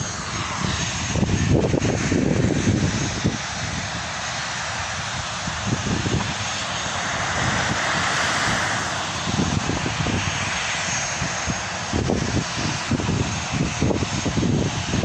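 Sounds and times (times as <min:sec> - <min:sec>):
airliner engines passing over: 0:00.0 - 0:15.0
low buffeting: 0:03.8 - 0:10.9.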